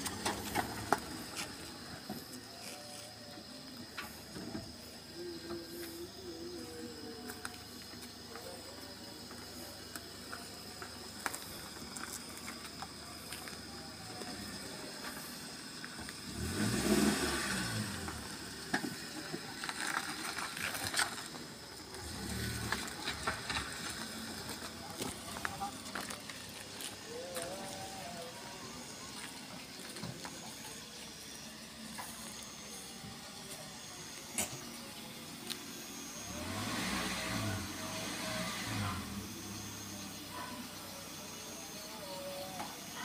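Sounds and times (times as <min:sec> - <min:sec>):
motor vehicle passing: 0:36.2 - 0:39.5.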